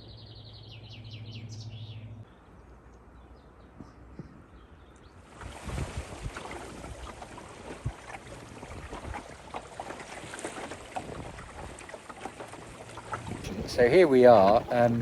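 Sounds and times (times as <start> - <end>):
rain tapping on boat and water: 5.3 - 15.0.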